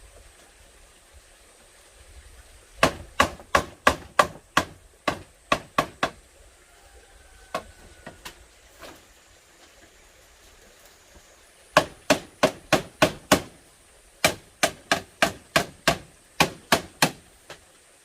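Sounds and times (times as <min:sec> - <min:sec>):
sharp strikes on bamboo: 0:02.8 - 0:06.2, 0:11.7 - 0:13.6, 0:14.2 - 0:17.6.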